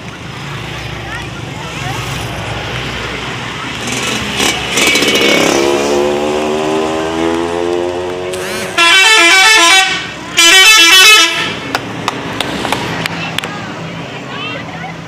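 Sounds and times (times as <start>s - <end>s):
warbling bus horn tune: 8.7s - 11.6s.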